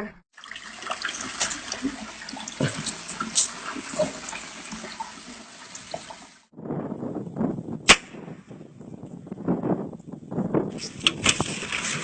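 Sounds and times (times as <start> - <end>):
water running: 0.3 - 6.5.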